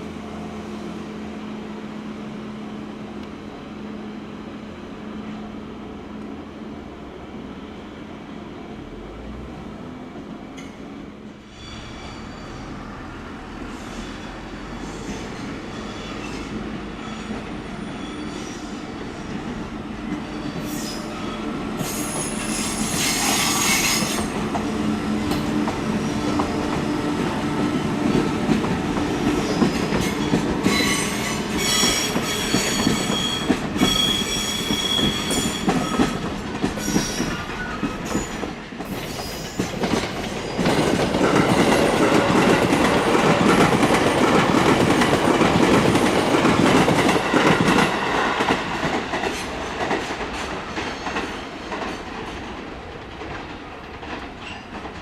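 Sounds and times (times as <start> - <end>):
train rolling on rails: 0.0 - 55.0
high-pitched wheel squeal: 11.4 - 19.3, 20.2 - 24.3, 29.4 - 36.2.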